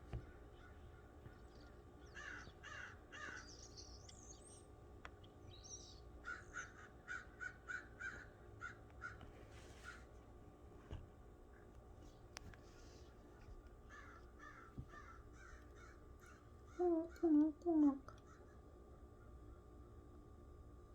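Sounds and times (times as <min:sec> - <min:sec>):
large birds calling: 0:00.1 - 0:10.1, 0:13.8 - 0:17.2.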